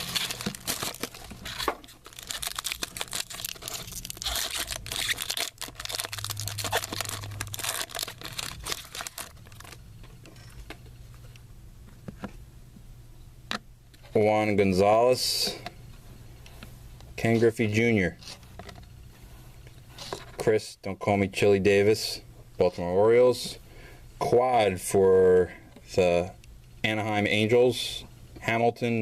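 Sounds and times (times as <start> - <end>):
card wrappers tearing and crinkling: 0.0 - 9.8.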